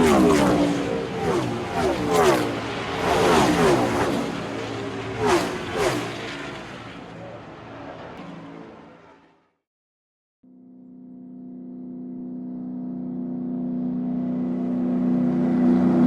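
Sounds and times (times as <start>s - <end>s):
cars whooshing by: 0.0s - 9.3s
fast car engines revving: 0.0s - 9.3s, 13.4s - 16.0s.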